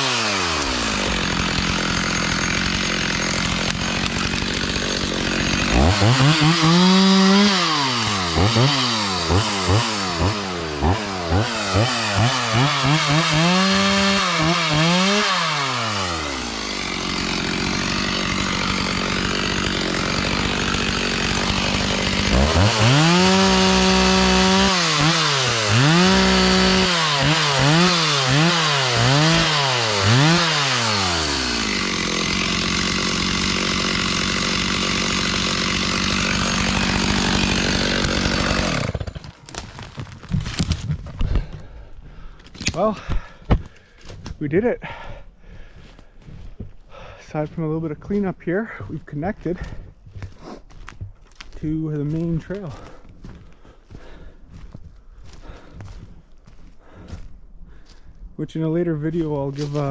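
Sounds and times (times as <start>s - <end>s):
chainsaw revving: 0.0s - 39.4s
chainsaw cutting wood: 0.0s - 41.8s, 42.4s - 45.1s, 59.2s - 59.9s.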